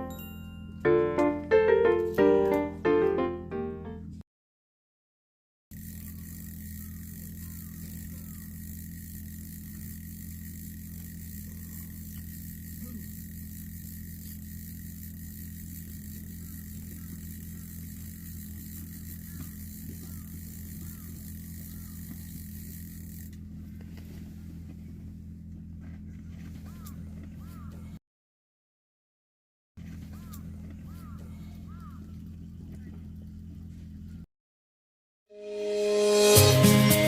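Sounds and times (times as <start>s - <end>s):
thin high steady tone: 0.0s - 0.9s, 5.7s - 23.4s
steady low hum: 5.7s - 28.0s.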